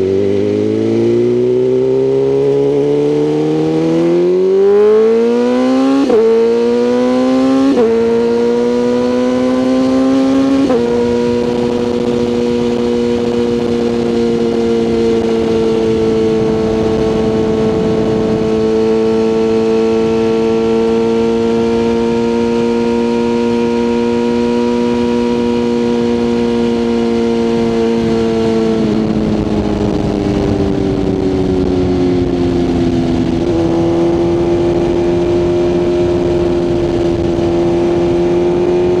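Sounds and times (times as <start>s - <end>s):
motorcycle engine accelerating: 0.0s - 39.0s.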